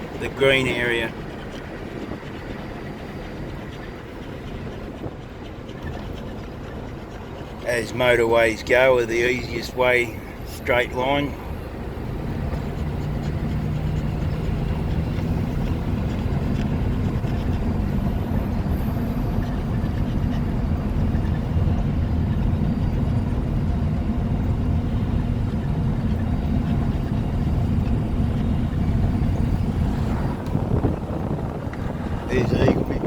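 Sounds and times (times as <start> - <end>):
tyre road noise: 0.0 - 33.0
car engine from inside cabin: 7.6 - 33.0.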